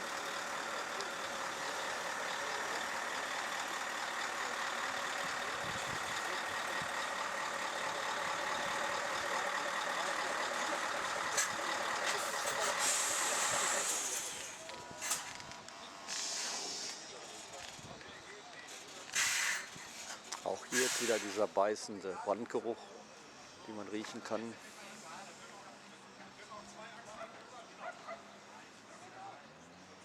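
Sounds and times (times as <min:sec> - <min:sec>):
heavy truck engine running: 0:00.0 - 0:21.4
hissing air burst: 0:12.2 - 0:15.3, 0:16.1 - 0:17.0, 0:19.1 - 0:21.5.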